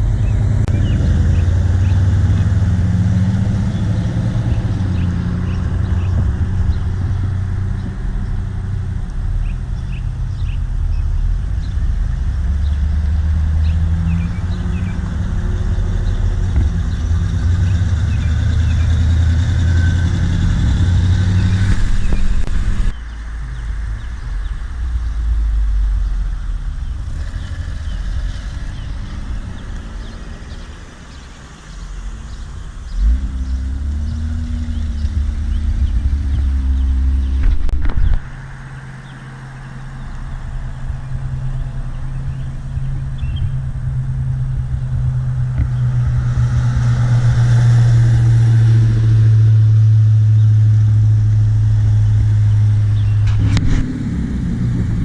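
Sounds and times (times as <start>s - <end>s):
car engine droning: 0.0s - 55.0s
car engines rumbling: 0.0s - 55.0s.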